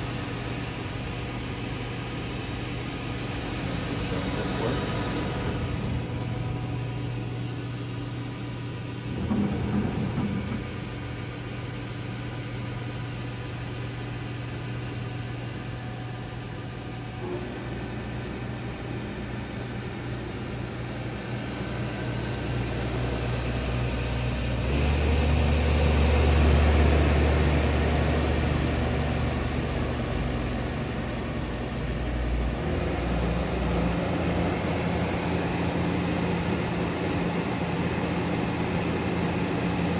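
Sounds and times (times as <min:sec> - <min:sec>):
lathe machine hum: 0:00.0 - 0:39.9.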